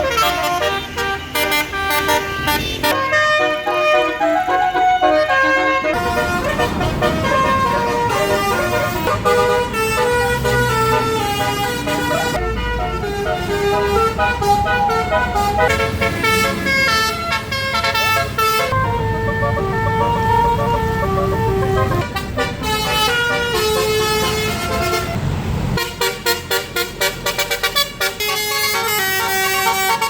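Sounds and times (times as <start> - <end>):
bus engine running: 0.0 - 30.0
bus horn playing a melody: 0.0 - 30.0.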